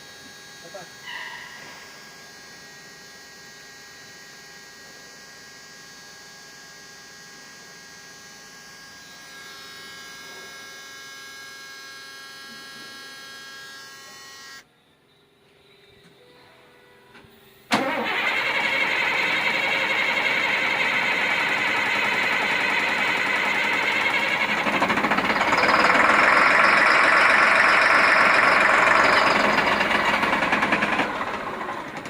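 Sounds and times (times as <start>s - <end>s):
electric fuel pump whining: 17.4s - 32.0s.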